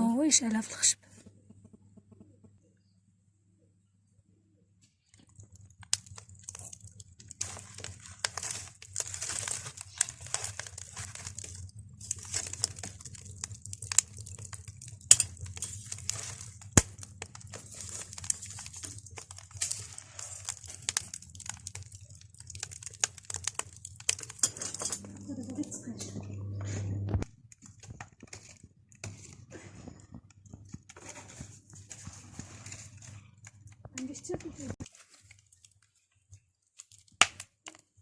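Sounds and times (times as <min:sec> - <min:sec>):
low steady hum: 0:00.0 - 0:27.4
wood fire crackling and popping: 0:04.8 - 0:38.0.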